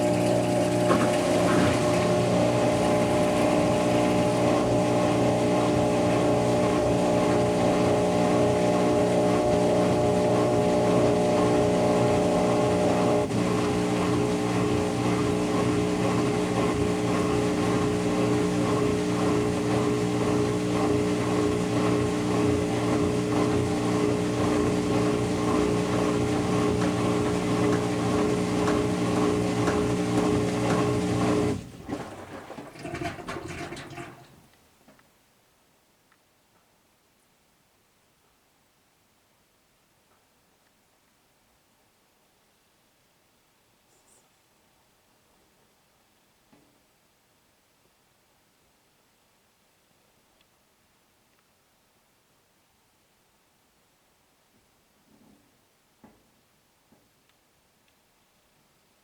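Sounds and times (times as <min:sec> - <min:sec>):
washing machine motor whine: 0:00.0 - 0:34.4.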